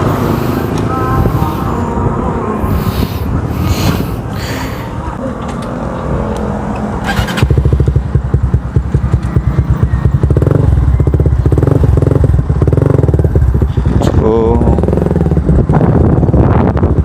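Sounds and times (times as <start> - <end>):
motorcycle engine revving: 0.0 - 1.9, 6.9 - 17.0.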